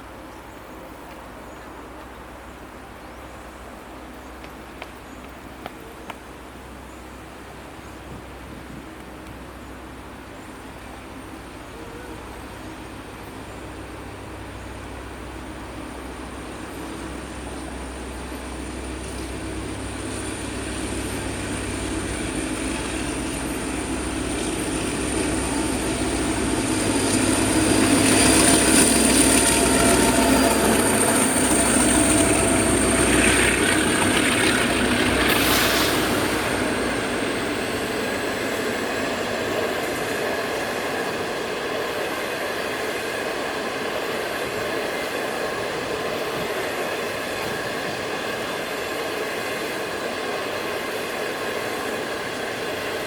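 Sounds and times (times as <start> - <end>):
diesel locomotive engine: 0.0 - 53.0
coaches rolling on rails: 0.2 - 53.0
thin high whine: 14.4 - 43.8.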